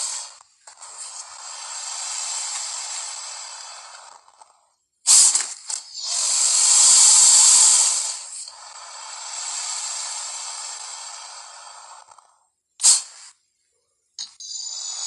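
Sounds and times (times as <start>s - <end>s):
long rushing hiss: 0.0s - 4.3s, 5.1s - 12.2s.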